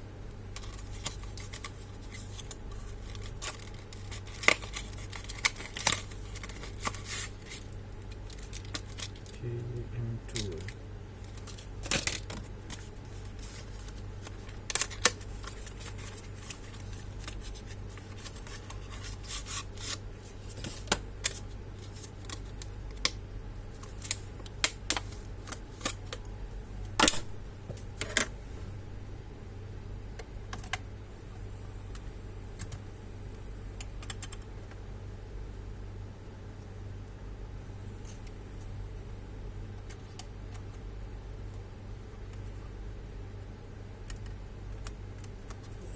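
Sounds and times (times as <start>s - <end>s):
low hum: 0.0s - 45.9s.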